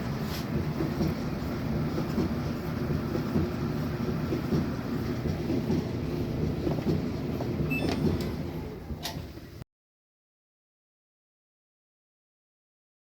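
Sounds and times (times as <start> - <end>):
dryer drum rumbling: 0.0 - 9.6.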